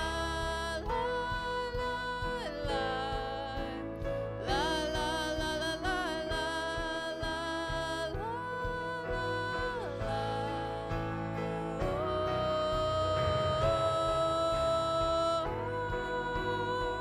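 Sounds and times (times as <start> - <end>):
soft instrumental backing: 0.0 - 17.0
person singing long notes: 4.5 - 17.0.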